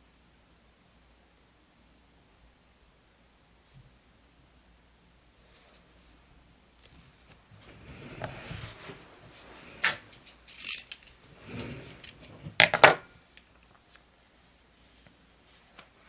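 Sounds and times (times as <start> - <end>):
sharp clicks and scrapes: 9.8 - 12.4.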